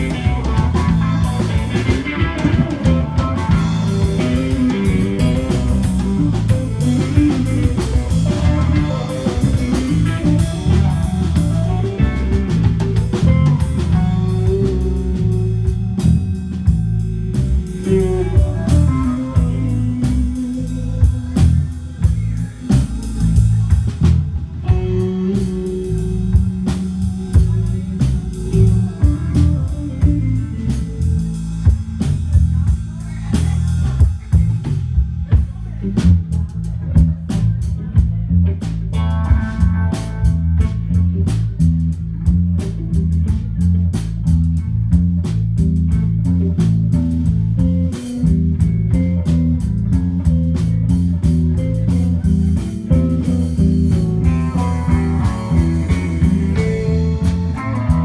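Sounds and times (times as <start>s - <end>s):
bass: 0.0s - 58.0s
drum kit: 0.0s - 58.0s
electric guitar lines: 0.0s - 58.0s
live blues band: 0.0s - 58.0s.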